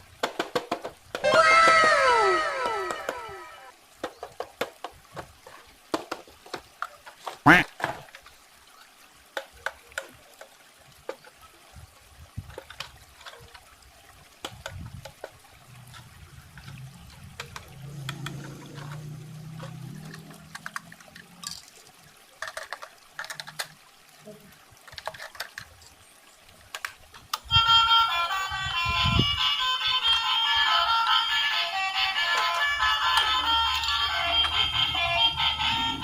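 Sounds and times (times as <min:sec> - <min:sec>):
plastic toy clicks and taps: 0:00.2 - 0:01.3, 0:17.4 - 0:19.0, 0:19.6 - 0:21.6, 0:22.4 - 0:23.8, 0:26.7 - 0:27.5, 0:32.3 - 0:34.6.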